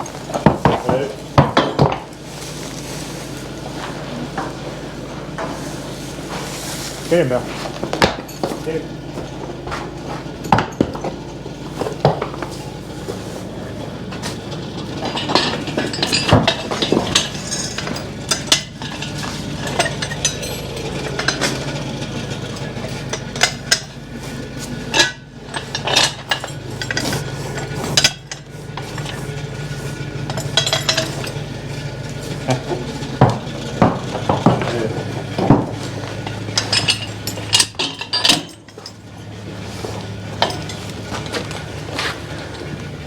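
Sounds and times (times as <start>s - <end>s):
harness chains clinking: 0.0s - 43.0s.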